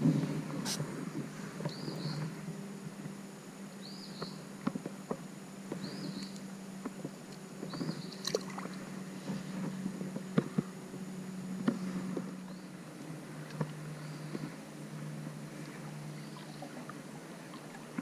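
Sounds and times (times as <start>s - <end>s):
small clicks and splashes: 4.6s - 8.8s
water sloshing around wading legs: 7.6s - 10.7s, 13.2s - 18.0s.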